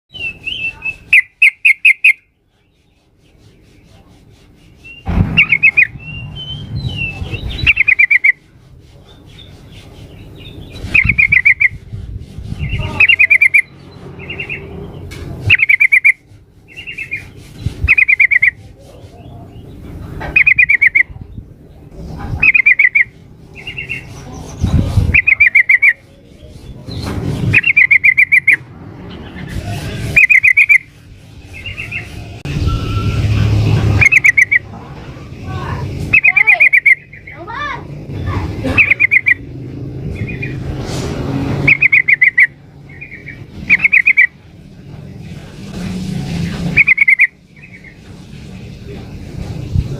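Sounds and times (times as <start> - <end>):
bulbul chattering: 0.1 - 11.9, 12.5 - 32.2, 33.9 - 40.7, 41.6 - 44.5, 46.3 - 48.1
low rumble: 5.1 - 7.8.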